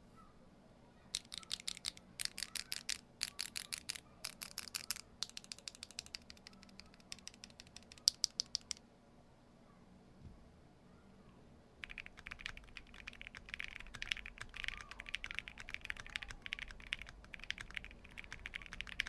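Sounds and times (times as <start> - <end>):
typing on a mechanical keyboard: 1.2 - 8.8, 11.8 - 19.0.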